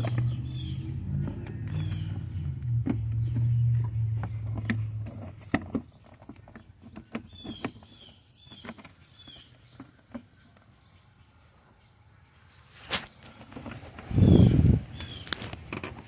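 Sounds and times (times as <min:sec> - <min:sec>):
bird chirping: 0:00.0 - 0:15.8
plastic parts clicking and knocking: 0:01.2 - 0:10.7, 0:15.0 - 0:16.0.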